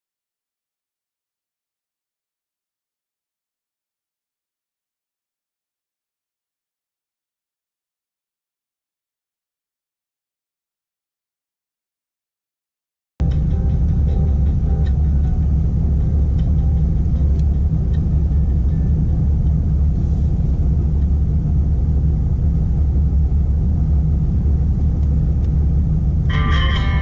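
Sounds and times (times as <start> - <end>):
vehicle engine rumbling: 13.2 - 27.0
higher-pitched rising tone: 26.3 - 27.0.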